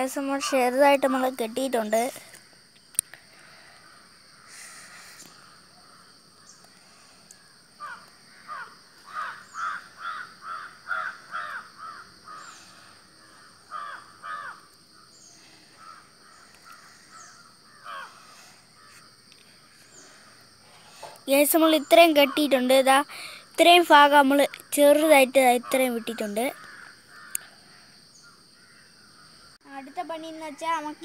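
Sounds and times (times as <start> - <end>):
bird harsh calls: 7.8 - 19.1.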